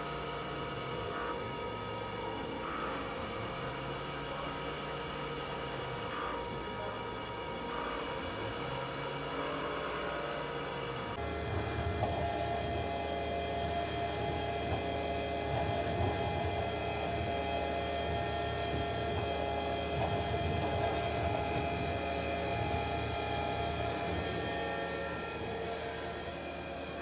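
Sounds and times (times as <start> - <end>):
motor humming: 11.1 - 27.0.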